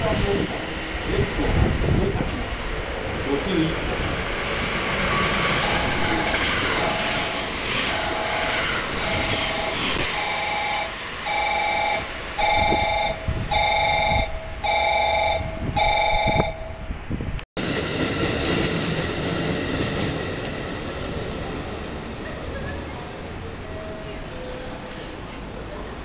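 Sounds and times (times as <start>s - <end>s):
train rushing: 0.0s - 26.0s
two-tone electronic warning beeps: 5.1s - 16.9s.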